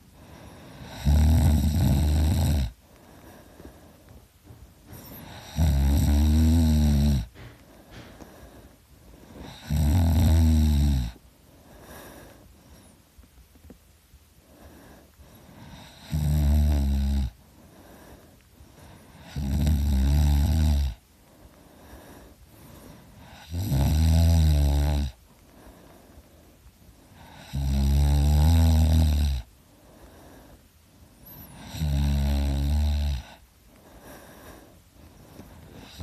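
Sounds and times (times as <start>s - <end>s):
quiet breaths: 0.0s - 36.0s
man snoring heavily: 0.2s - 2.8s, 5.0s - 7.4s, 9.3s - 11.2s, 15.5s - 17.4s, 19.1s - 21.0s, 22.8s - 25.2s, 27.2s - 29.5s, 31.5s - 33.4s, 35.8s - 36.0s.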